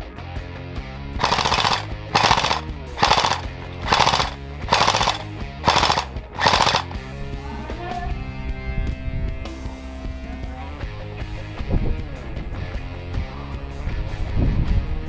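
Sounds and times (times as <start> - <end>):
airsoft gun automatic fire: 1.2 - 7.0.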